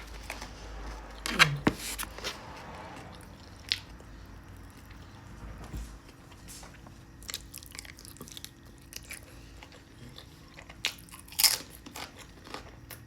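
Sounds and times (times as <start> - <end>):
person chewing food: 6.1 - 13.0.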